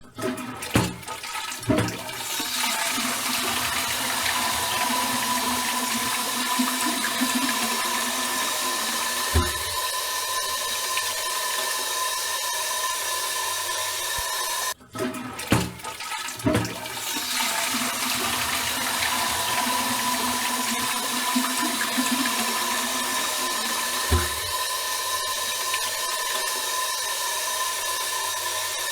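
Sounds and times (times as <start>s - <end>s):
water rushing through toilet bowl: 0.0s - 28.9s
cistern refilling hiss: 2.2s - 14.8s
toilet handle clicks: 7.2s - 9.9s, 24.0s - 24.6s
knock: 9.4s - 9.8s.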